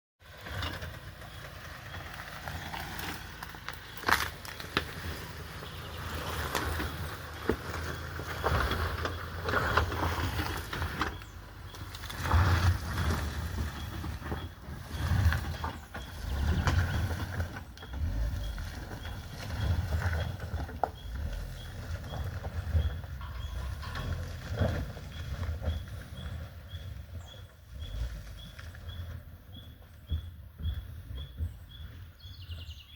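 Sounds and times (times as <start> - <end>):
engine and tyres rumbling: 0.2 - 32.9
knocks and rattles: 18.7 - 26.9.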